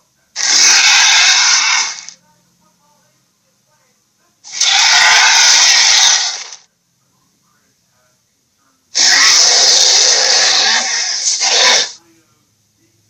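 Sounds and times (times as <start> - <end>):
harsh raspy monster roars: 0.4 - 2.1, 4.5 - 6.6, 9.0 - 12.0.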